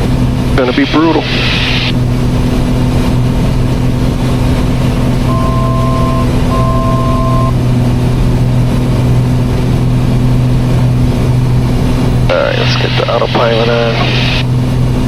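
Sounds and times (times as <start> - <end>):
aircraft engines and propellers droning: 0.0 - 15.0
electronic two-tone beeps: 5.3 - 7.6.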